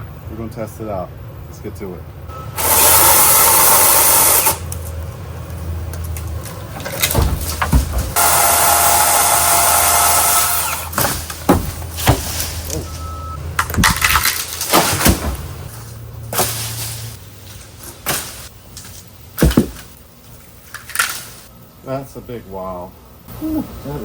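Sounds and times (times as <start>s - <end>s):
chainsaw cutting with high whine: 2.6s - 4.7s, 8.2s - 11.0s
wood cracking and snapping: 5.9s - 8.2s, 9.8s - 16.9s.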